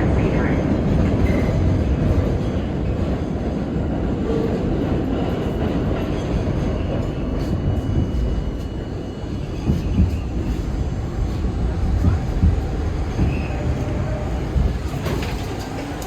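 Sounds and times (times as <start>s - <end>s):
subway car rumbling on track: 0.0s - 16.0s
wheels clicking over rail joints: 14.5s - 16.0s.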